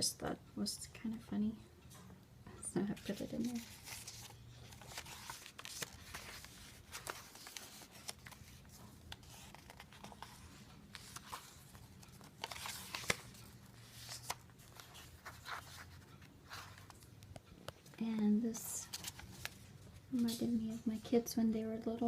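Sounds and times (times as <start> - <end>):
paper rustling and crinkling: 2.9 - 17.1, 18.8 - 20.4.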